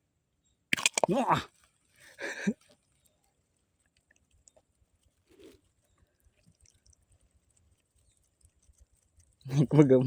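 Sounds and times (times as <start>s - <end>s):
soft rustle: 1.5s - 9.5s.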